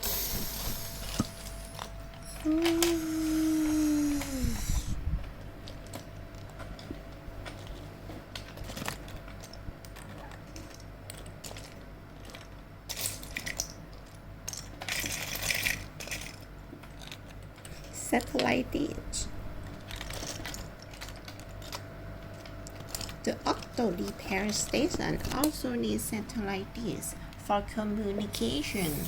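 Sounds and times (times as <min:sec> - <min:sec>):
hum sliding down in pitch: 0:02.2 - 0:05.0
plastic toy pieces clattering: 0:08.4 - 0:17.8, 0:19.8 - 0:23.7.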